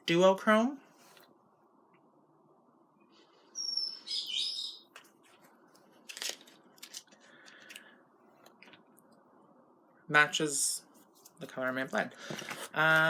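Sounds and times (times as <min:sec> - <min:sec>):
high bird chirp: 0:03.6 - 0:04.9.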